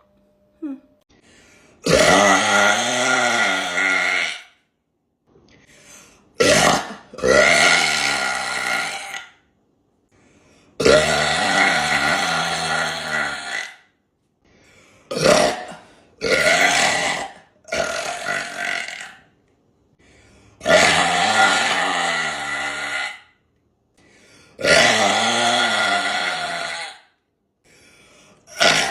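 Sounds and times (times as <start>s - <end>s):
woman burping: 0.6s - 0.9s, 6.4s - 9.2s, 15.1s - 19.2s, 28.5s - 28.9s.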